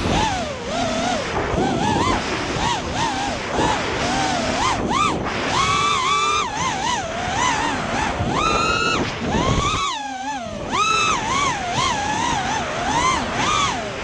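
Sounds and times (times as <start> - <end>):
wind rushing: 0.0 - 4.8
drone motors whining: 0.0 - 14.0.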